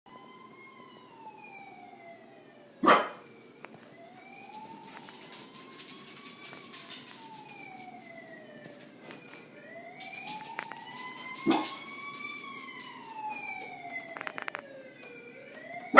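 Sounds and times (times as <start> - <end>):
siren wailing: 0.1 - 15.9
dog barking: 2.8 - 3.2, 11.4 - 11.7
dog yipping: 2.8 - 3.2.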